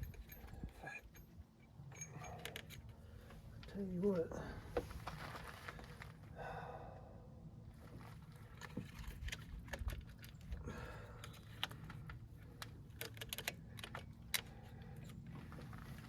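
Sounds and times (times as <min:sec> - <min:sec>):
faint steady hum: 0:00.0 - 0:16.0
hand tools and plastic parts clicking: 0:01.9 - 0:03.0, 0:08.5 - 0:16.0.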